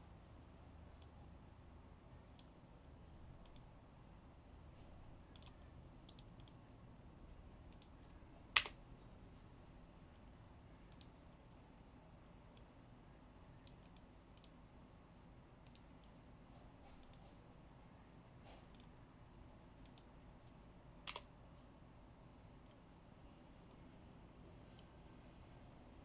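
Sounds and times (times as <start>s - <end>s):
low steady hiss: 0.0s - 26.0s
faint sharp clicks: 3.4s - 3.7s, 5.3s - 6.6s, 7.7s - 8.8s, 10.9s - 11.2s, 13.6s - 14.6s, 15.6s - 16.2s, 17.0s - 17.2s, 18.7s - 19.0s, 19.8s - 20.1s, 21.1s - 21.3s.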